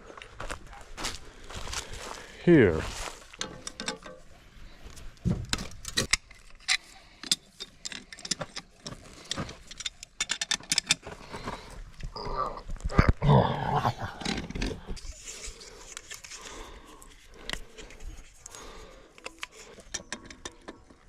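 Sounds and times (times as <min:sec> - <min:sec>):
metallic clicks and clinks: 0:03.4 - 0:04.2, 0:05.5 - 0:11.0.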